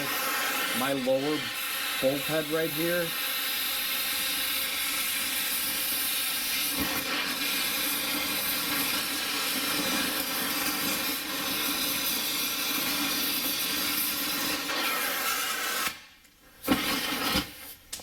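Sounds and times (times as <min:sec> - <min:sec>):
torch flame hissing: 0:00.0 - 0:18.0.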